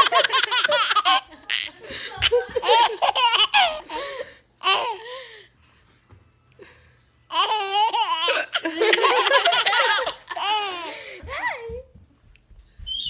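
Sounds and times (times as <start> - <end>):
baby laughing: 0.0 - 5.0, 7.3 - 11.0.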